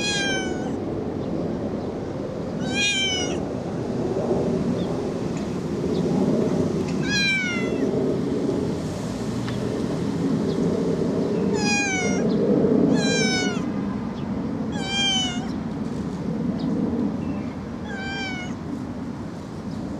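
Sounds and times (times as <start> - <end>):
kitten meowing: 0.0 - 0.8, 2.6 - 3.4, 7.0 - 7.9, 11.5 - 12.2, 12.9 - 13.7, 14.7 - 15.6, 17.8 - 18.6.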